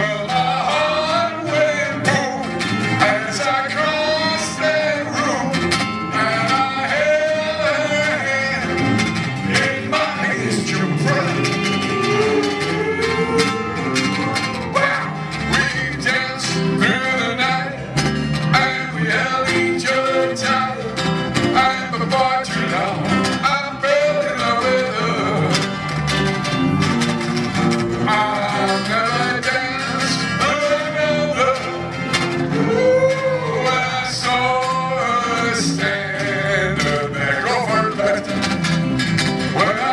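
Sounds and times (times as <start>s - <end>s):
guitars: 0.0s - 39.9s
live band playing pop music: 0.0s - 39.9s.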